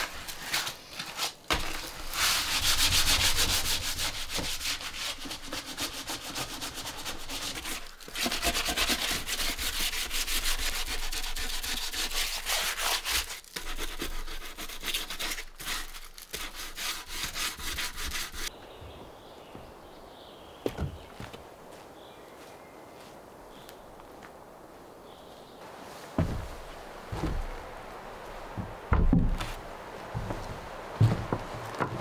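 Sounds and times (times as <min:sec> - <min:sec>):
rapid rubbing strokes on wood: 0:02.0 - 0:18.5.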